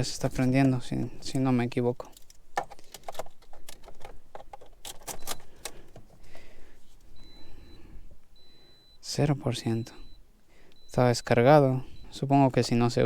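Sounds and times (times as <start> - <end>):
faint steady high tone: 7.1 - 13.0.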